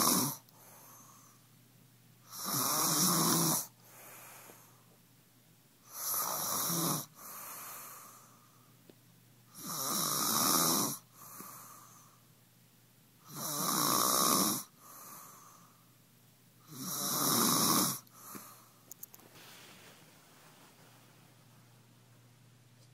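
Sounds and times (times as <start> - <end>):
loud snoring: 0.0 - 0.4, 2.3 - 3.7, 5.9 - 7.2, 9.6 - 11.1, 13.3 - 14.7, 16.7 - 18.0
soft breath out: 3.8 - 4.9, 18.1 - 21.2.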